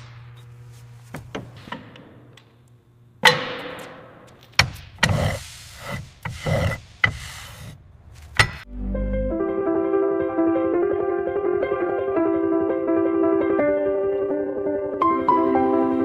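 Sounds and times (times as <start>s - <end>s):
sharp metallic knocks and clanks: 3.2s - 5.4s, 8.3s - 8.7s.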